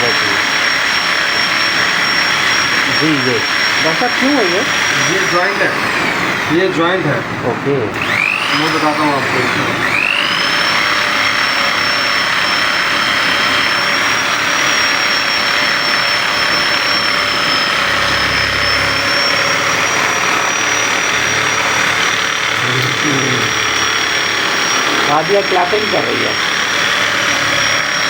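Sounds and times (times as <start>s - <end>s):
small electric motor whining: 0.0s - 28.0s.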